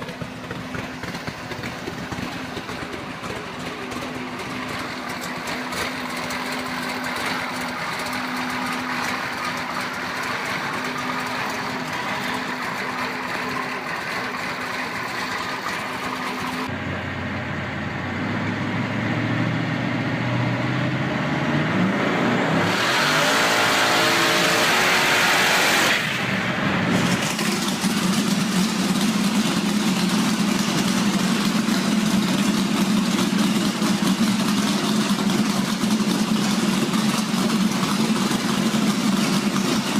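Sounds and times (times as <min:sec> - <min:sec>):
car engine idling: 0:00.0 - 0:18.4, 0:26.0 - 0:39.9
car engine revving: 0:18.1 - 0:39.9.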